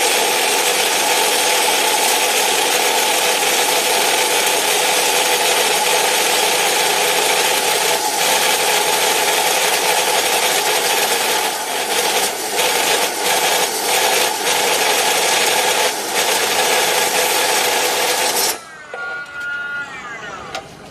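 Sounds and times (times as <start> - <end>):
saw cutting with harsh rasping: 5.2 - 18.6.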